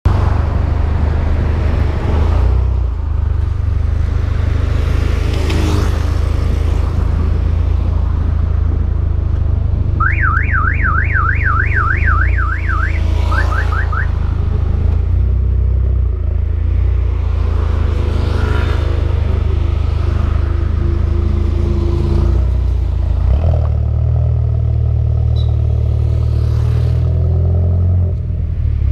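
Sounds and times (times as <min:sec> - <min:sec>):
car exhaust drone: 0:06.2 - 0:26.2
warbling alarm tone: 0:10.0 - 0:14.2.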